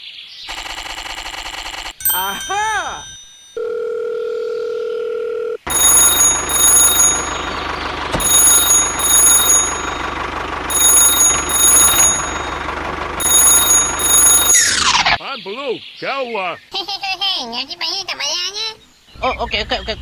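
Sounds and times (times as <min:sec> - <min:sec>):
electronic alarm ringing: 0:00.5 - 0:15.2
high beeps: 0:05.7 - 0:15.2.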